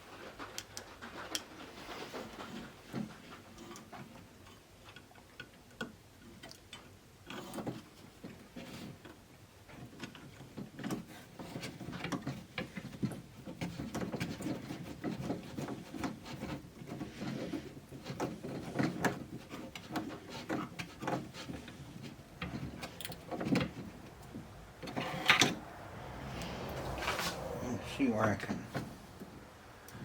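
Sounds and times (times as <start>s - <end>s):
small parts clicking and rattling: 9.7s - 25.6s.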